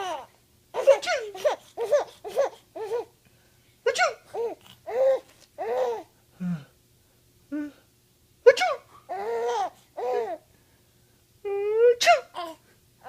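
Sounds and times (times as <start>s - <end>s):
baby laughing: 0.8s - 3.1s.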